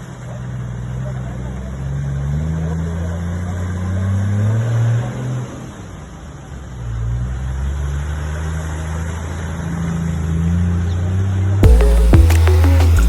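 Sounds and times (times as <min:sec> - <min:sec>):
vehicle engine revving: 0:00.4 - 0:05.9.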